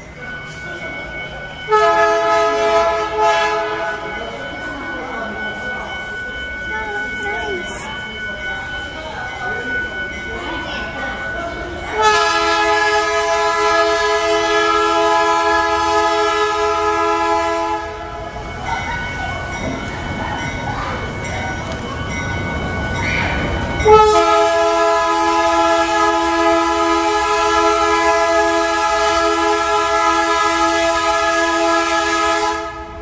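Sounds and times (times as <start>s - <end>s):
train rumbling: 0.0s - 33.0s
locomotive air horn blast: 1.7s - 3.8s, 12.0s - 18.0s, 23.9s - 33.0s.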